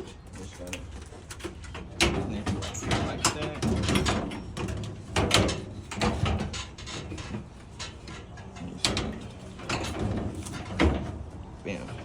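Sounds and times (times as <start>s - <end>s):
dryer parts knocking and scraping: 0.0s - 12.0s.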